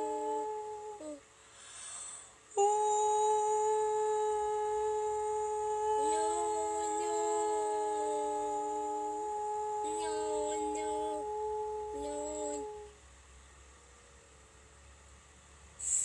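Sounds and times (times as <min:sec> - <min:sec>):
sustained drone tone: 0:00.0 - 0:01.2, 0:02.6 - 0:13.0
woman singing long notes: 0:00.0 - 0:01.2, 0:02.5 - 0:13.0.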